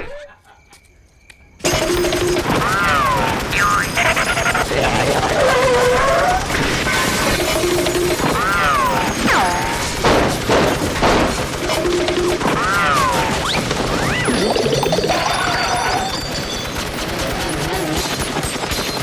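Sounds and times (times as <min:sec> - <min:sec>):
clatter of crashes and shattering: 0:01.6 - 0:19.0.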